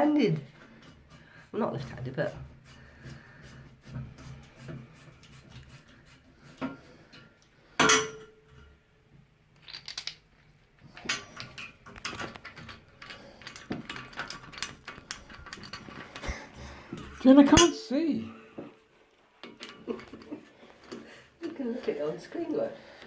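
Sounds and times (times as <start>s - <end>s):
metal tools clicking and knocking: 7.1s - 8.7s, 9.6s - 10.2s, 10.9s - 17.9s, 19.4s - 21.6s
loud metallic clank: 7.8s - 8.4s.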